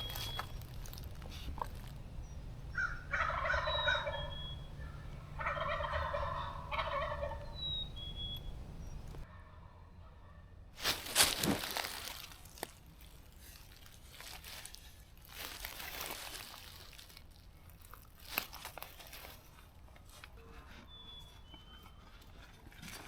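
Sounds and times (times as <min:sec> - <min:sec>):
sharp crackle: 0:00.0 - 0:02.1, 0:10.8 - 0:19.4
rustling and crunching: 0:00.0 - 0:03.7, 0:10.7 - 0:23.0.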